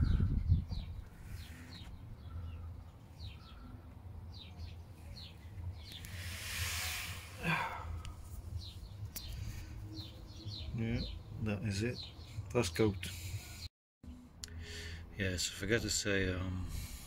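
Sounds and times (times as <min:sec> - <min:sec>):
birds chirping: 0:00.0 - 0:13.7
brief hiss: 0:06.0 - 0:07.4.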